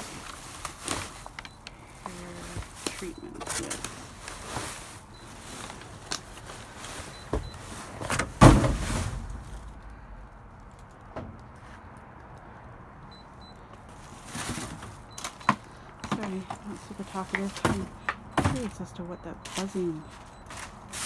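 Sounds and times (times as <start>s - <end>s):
rummaging through trash: 0.0s - 12.0s, 13.2s - 21.0s
rustling: 0.0s - 12.0s, 13.5s - 21.0s
faint high-pitched beeps: 1.4s - 4.0s, 15.1s - 20.6s
heavy thump: 8.2s - 9.9s.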